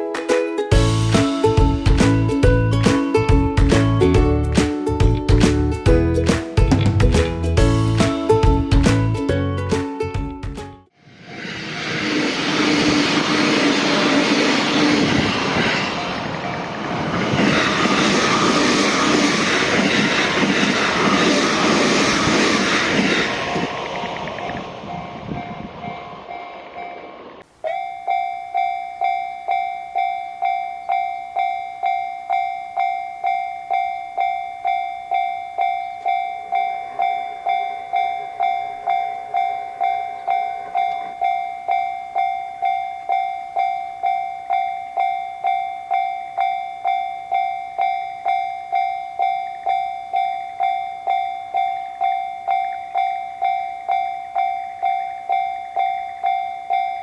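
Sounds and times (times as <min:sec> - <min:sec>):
railroad crossing bell ringing: 0:00.7 - 0:06.4, 0:13.0 - 0:57.0
train rushing past: 0:11.0 - 0:27.4.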